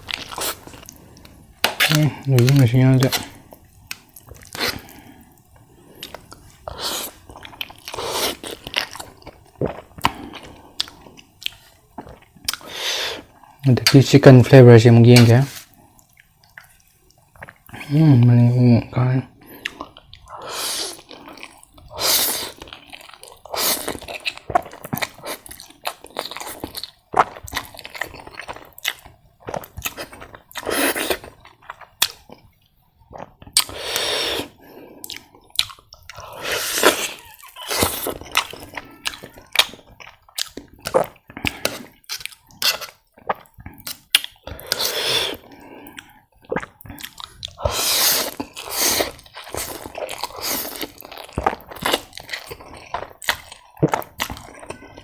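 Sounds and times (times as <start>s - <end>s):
chewing noodles: 0.0s - 14.0s, 19.4s - 55.0s
wet mouth sounds: 5.9s - 14.1s, 19.5s - 55.0s.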